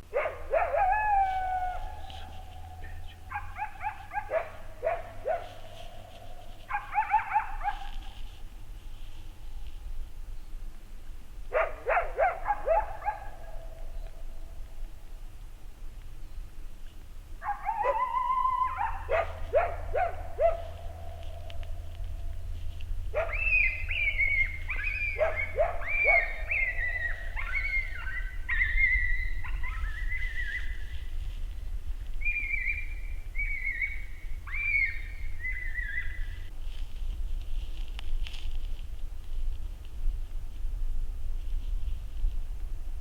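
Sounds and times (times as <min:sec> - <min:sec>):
coyote howling: 0:00.1 - 0:08.2, 0:11.6 - 0:14.2, 0:17.4 - 0:31.0, 0:32.2 - 0:36.4
coyote yips and barks: 0:00.1 - 0:08.2, 0:11.5 - 0:14.2, 0:17.4 - 0:31.3, 0:32.2 - 0:36.4.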